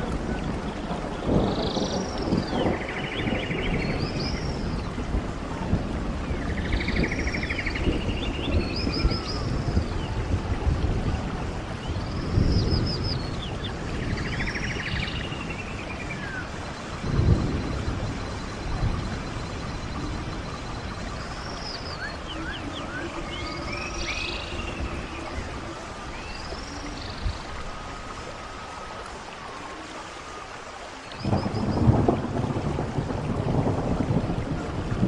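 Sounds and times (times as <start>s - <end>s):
stream rushing: 0.0s - 35.0s
birds chirping: 11.7s - 28.8s.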